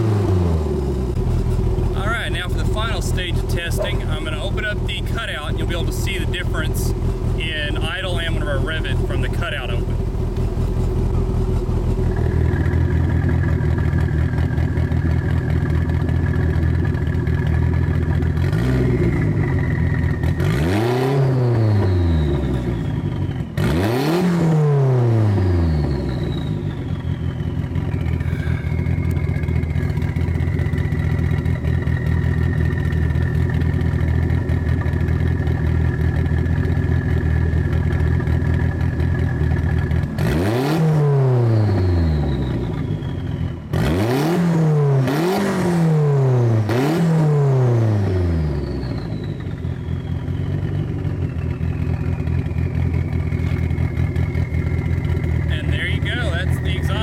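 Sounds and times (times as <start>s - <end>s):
car engine idling: 0.0s - 24.0s, 25.7s - 44.2s, 47.6s - 57.0s
engine revving: 0.0s - 57.0s
turbo whistle: 26.0s - 32.4s, 41.5s - 43.8s.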